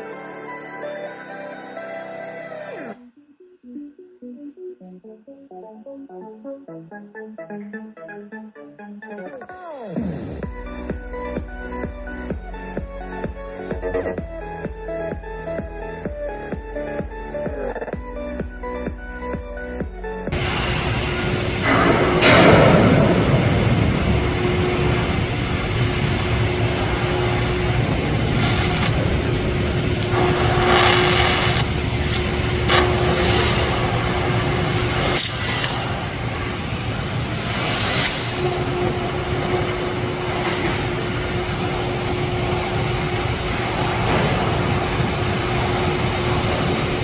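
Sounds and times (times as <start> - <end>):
welding equipment humming: 20.3 - 47.0.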